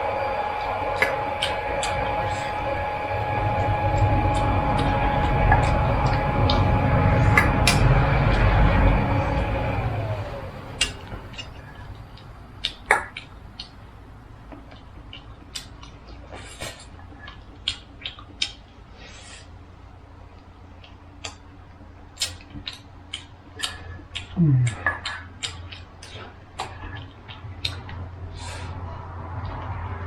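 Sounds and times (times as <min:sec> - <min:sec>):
passing vehicle: 0:00.0 - 0:16.2, 0:26.6 - 0:30.0
steady low hum: 0:00.0 - 0:30.0.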